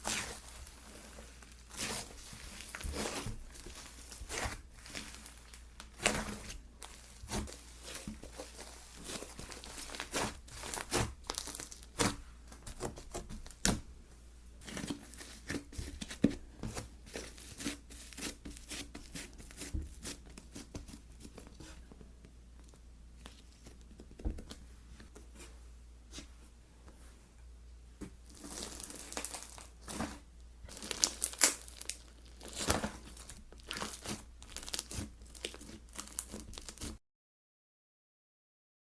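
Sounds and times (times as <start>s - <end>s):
slime crackling pops: 30.8s - 32.9s.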